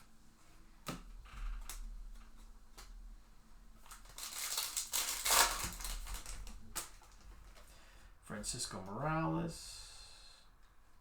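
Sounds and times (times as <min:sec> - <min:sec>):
foil wrapper crinkling: 0:03.8 - 0:07.6.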